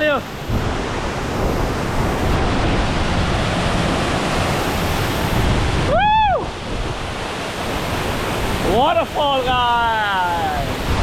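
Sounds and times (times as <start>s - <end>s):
waterfall rushing: 0.0s - 11.0s
person shouting woo: 5.9s - 6.5s.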